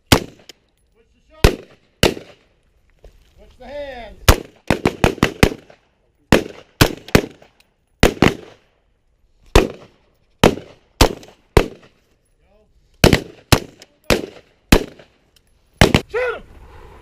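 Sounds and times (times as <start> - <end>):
rifle shots: 0.0 - 0.5, 1.4 - 2.5, 4.2 - 8.6, 9.5 - 12.0, 13.0 - 15.2, 15.8 - 16.1.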